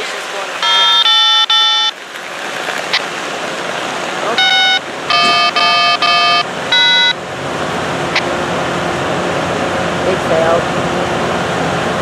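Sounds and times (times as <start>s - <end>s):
electronic chord tones: 0.6s - 2.0s, 4.3s - 7.2s.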